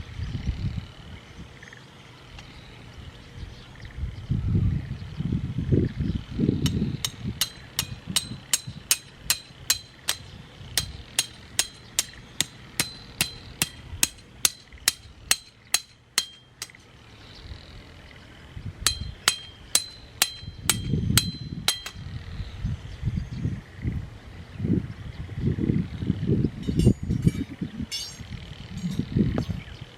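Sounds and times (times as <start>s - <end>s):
hammer blows with metallic ring: 6.6s - 16.9s, 18.9s - 22.0s, 26.6s - 29.1s.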